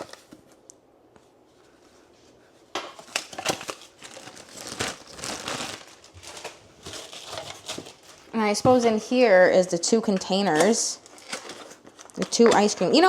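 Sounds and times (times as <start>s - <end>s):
packaging crinkling and rustling: 0.0s - 0.6s, 2.9s - 8.4s, 10.1s - 13.0s.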